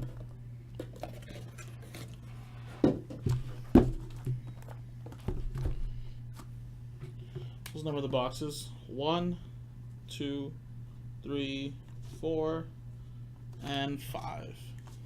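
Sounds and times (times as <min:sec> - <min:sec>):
steady low hum: 0:00.0 - 0:15.0
cardboard boxes knocking on table: 0:02.8 - 0:04.4.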